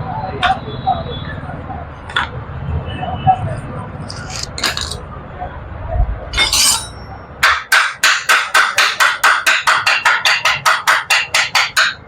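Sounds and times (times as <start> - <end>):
sharp metallic taps: 6.4 - 12.0.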